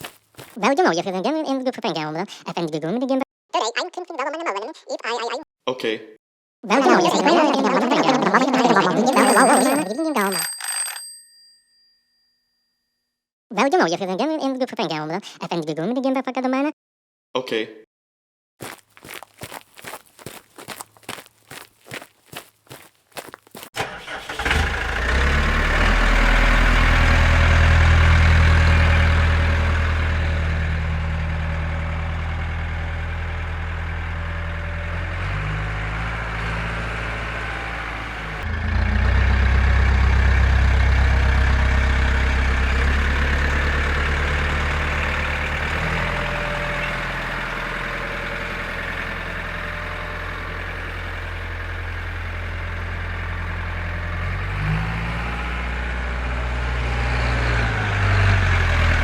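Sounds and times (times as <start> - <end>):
small engine idling: 23.8 - 54.5.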